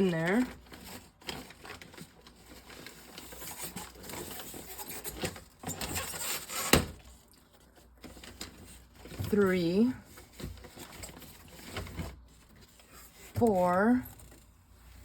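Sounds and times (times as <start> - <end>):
plastic bottles crinkling: 0.0 - 9.3.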